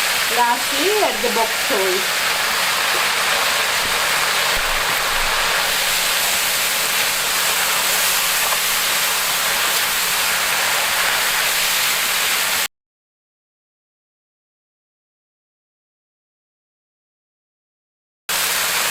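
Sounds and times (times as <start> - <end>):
food sizzling in a hot pan: 0.0 - 12.7, 18.3 - 18.9.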